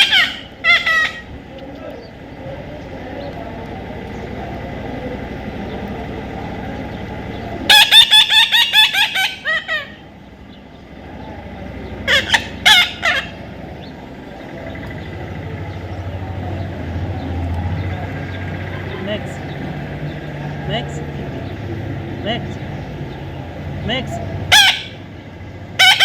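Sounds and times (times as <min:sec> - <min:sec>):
parrot calling: 0:00.0 - 0:02.1, 0:07.6 - 0:10.1, 0:11.9 - 0:13.9, 0:18.4 - 0:19.8, 0:24.4 - 0:25.2, 0:25.8 - 0:26.0.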